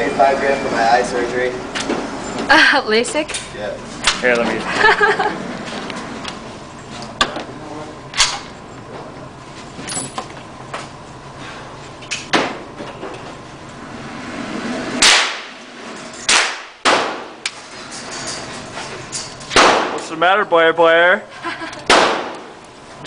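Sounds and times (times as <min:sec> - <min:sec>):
gunshots: 0:15.0 - 0:15.5, 0:16.3 - 0:17.4, 0:19.5 - 0:20.0, 0:21.9 - 0:22.5.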